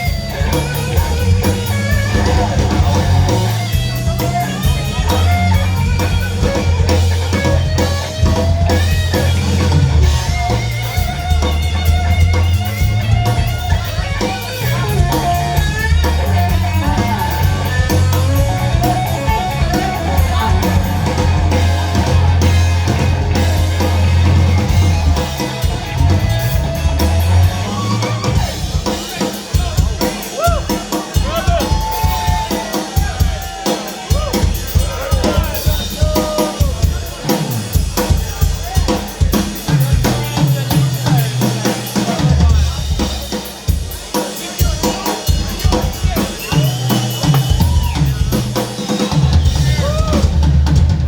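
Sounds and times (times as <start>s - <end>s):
electric guitar lead: 0.0s - 36.7s
bass guitar: 0.0s - 51.0s
drum kit: 0.0s - 51.0s.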